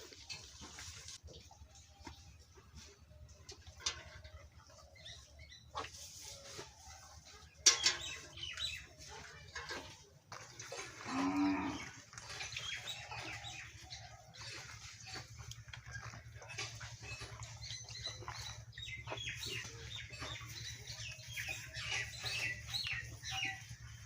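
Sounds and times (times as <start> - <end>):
cow mooing: 10.9 - 12.0.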